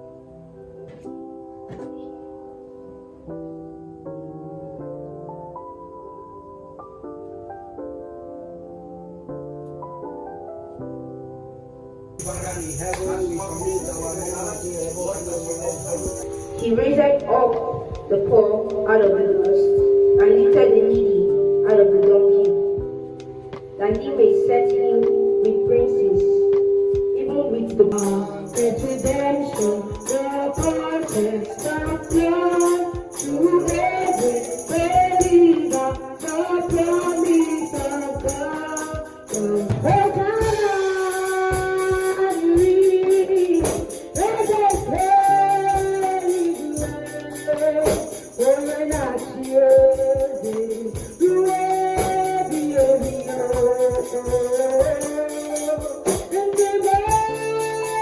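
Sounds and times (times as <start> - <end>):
jingling percussion beat: 12.2 - 18.4, 27.8 - 58.0
voices singing: 23.9 - 58.0.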